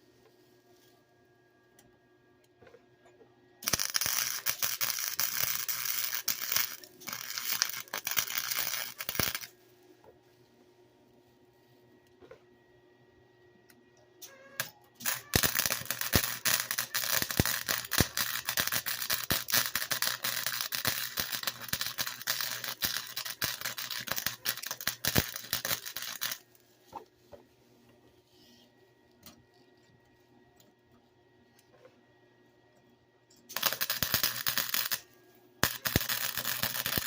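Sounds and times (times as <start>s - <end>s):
welding arc crackling and popping: 3.6s - 9.5s, 14.6s - 26.5s, 33.5s - 35.0s, 35.6s - 37.0s.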